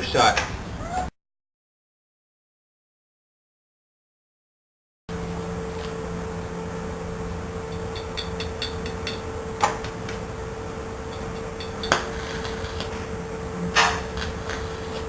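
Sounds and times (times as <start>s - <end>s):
steady electrical hum: 0.0s - 0.9s, 5.1s - 15.0s
welding arc crackling: 5.1s - 15.0s.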